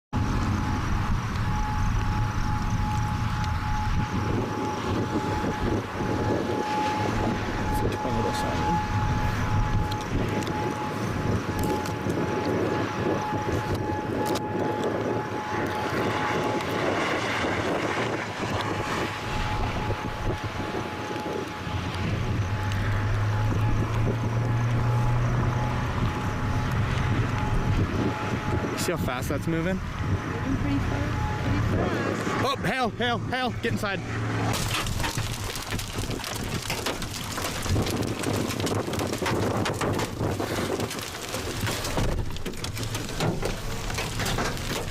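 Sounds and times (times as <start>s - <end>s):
strong wind blowing: 0.2s - 44.9s
hail and rain on vehicle: 34.5s - 44.9s.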